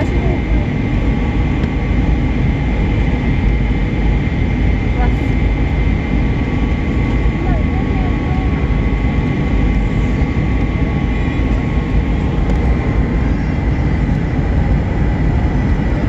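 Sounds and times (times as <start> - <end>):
deep rumble of aircraft engines: 0.0 - 16.0.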